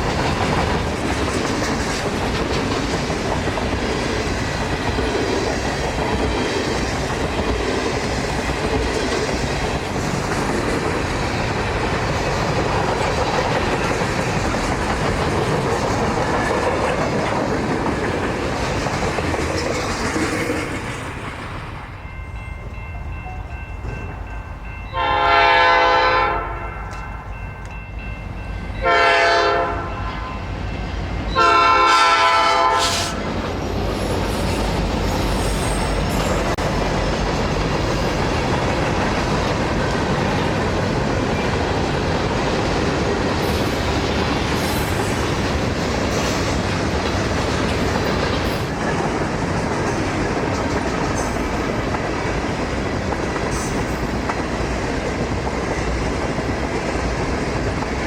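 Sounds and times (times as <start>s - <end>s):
train wheels clattering over rails: 0.0s - 21.9s, 31.4s - 58.0s
locomotive air horn blasts: 24.9s - 26.9s, 28.8s - 30.3s, 31.4s - 33.3s.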